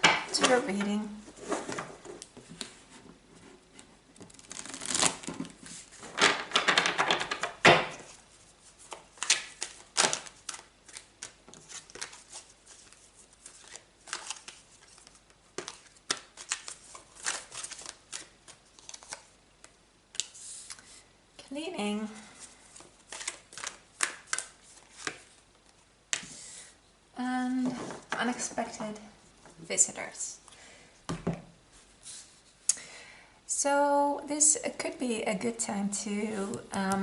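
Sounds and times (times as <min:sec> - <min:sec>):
cards being shuffled: 0:04.2 - 0:20.9, 0:22.4 - 0:26.3.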